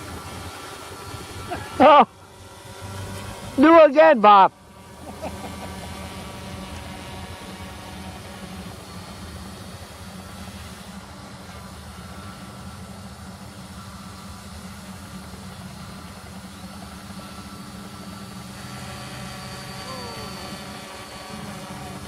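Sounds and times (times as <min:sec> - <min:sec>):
faint high tone: 0:19.7 - 0:20.7.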